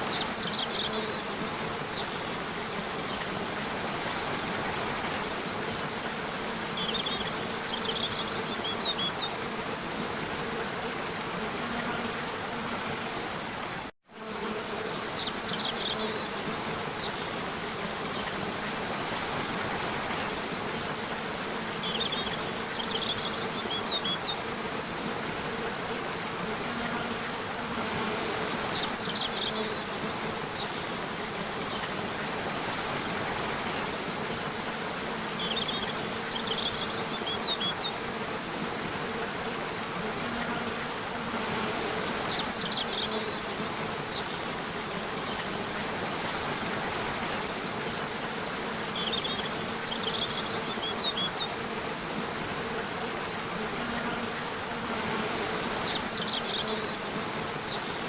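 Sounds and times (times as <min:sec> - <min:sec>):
insects buzzing: 0:00.0 - 0:58.0.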